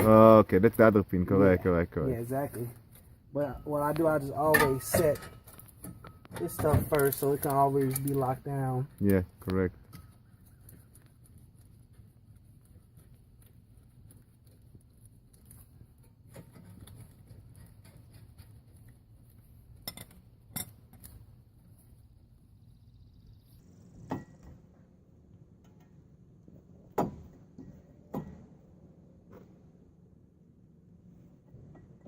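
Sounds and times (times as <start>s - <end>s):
sharp ringing metal knocks: 4.4s - 6.8s.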